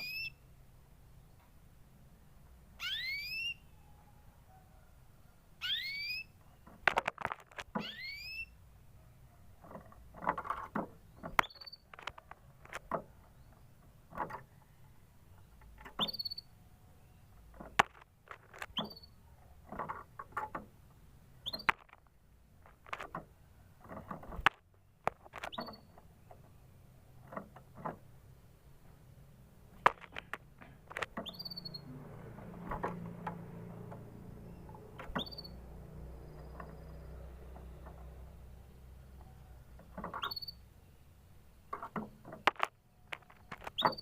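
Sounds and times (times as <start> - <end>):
canary short rising chirps: 2.8 - 3.7, 5.6 - 6.3, 31.2 - 32.0, 35.2 - 35.7
scattered clicks and taps: 29.8 - 31.2, 41.8 - 43.8.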